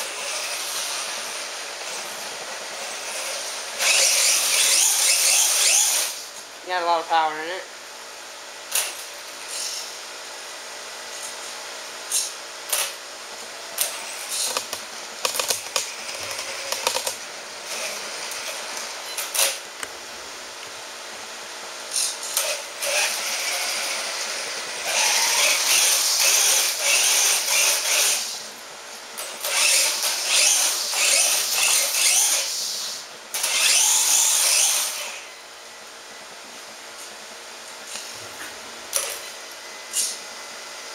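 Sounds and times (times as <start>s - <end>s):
rc truck electric motor whining: 0.0s - 6.4s, 8.7s - 10.1s, 13.7s - 19.7s, 21.9s - 35.4s.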